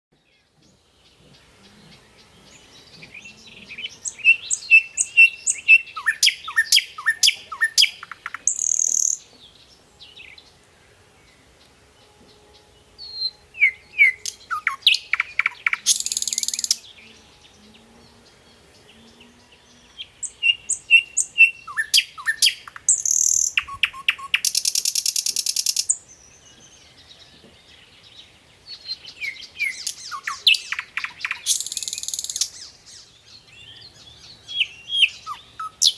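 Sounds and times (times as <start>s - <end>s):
songbird singing: 0.1s - 35.9s
buzzy bird trill: 2.2s - 9.2s, 13.0s - 17.6s.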